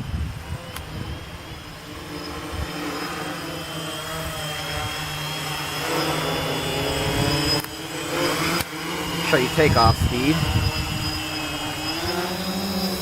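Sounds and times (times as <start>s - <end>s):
wind buffeting microphone: 0.0s - 2.9s, 9.0s - 12.4s
quadcopter propellers humming: 0.0s - 13.0s.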